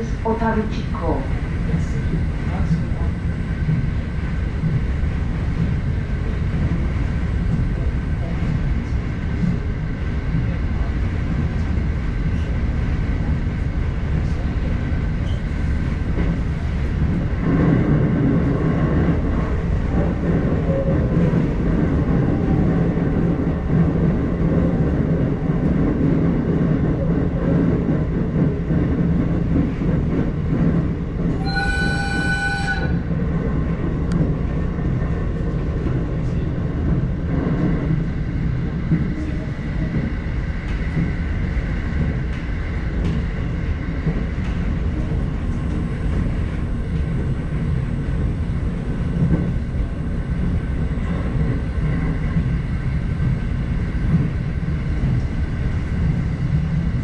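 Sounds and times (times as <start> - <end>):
train wheels rumbling on rails: 0.0 - 57.0
train horn: 31.4 - 33.1.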